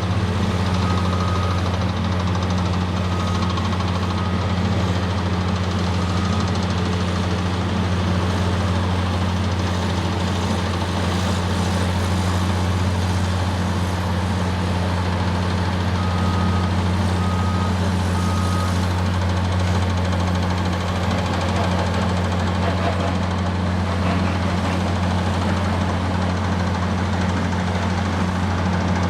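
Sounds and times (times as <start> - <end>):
diesel engine running: 0.0 - 29.0
reversing alarm beeps: 0.6 - 4.6, 5.9 - 6.6, 15.5 - 19.0.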